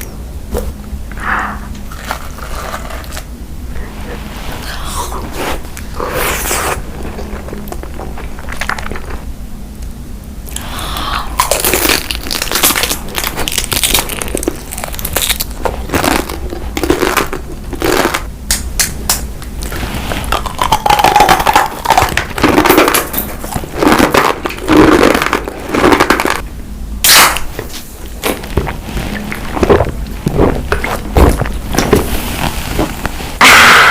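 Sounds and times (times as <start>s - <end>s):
crunching crisp food: 11.4s - 18.3s.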